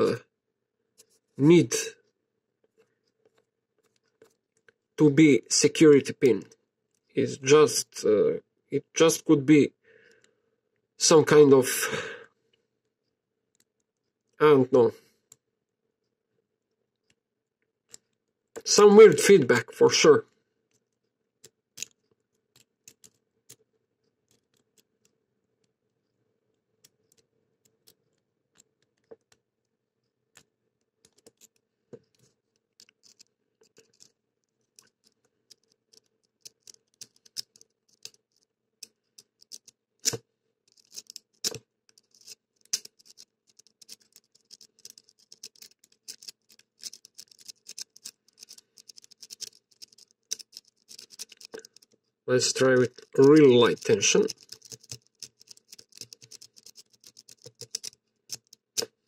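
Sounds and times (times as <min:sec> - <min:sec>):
fast ticks and scraping: 0:31.1 - 0:59.0
lock pick clicking in padlock: 0:35.5 - 0:51.9.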